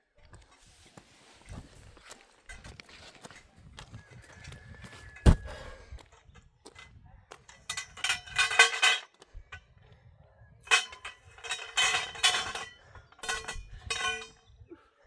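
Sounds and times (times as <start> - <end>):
metallic clattering and clinking: 6.1 - 9.2, 10.6 - 14.5.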